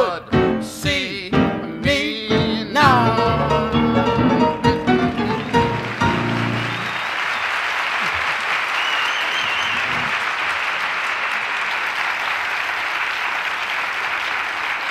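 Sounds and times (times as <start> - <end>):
audience applauding: 4.4 - 14.9.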